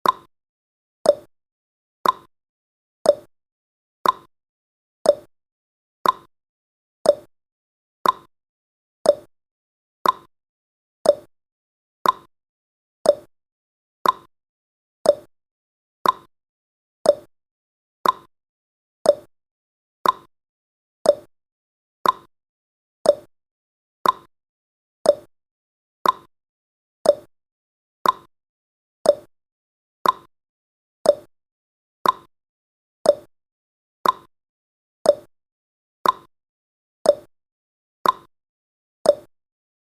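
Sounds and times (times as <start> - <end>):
timer ticking: 0.0 - 0.3, 1.1 - 1.3, 2.0 - 2.3, 3.1 - 3.3, 4.0 - 4.3, 5.1 - 5.3, 6.0 - 6.3, 7.1 - 7.3, 8.0 - 8.3, 9.0 - 9.3, 10.0 - 10.3, 11.0 - 11.3, 12.0 - 12.3, 13.0 - 13.3, 14.0 - 14.3, 15.0 - 15.3, 16.0 - 16.3, 17.0 - 17.3, 18.0 - 18.3, 19.0 - 19.3, 20.0 - 20.3, 21.0 - 21.3, 22.0 - 22.3, 23.0 - 23.3, 24.0 - 24.3, 25.0 - 25.3, 26.0 - 26.3, 27.0 - 27.3, 28.0 - 28.3, 29.0 - 29.3, 30.0 - 30.3, 31.0 - 31.3, 32.0 - 32.3, 33.0 - 33.3, 34.0 - 34.3, 35.1 - 35.3, 36.0 - 36.3, 37.1 - 37.3, 38.0 - 38.3, 39.1 - 39.3.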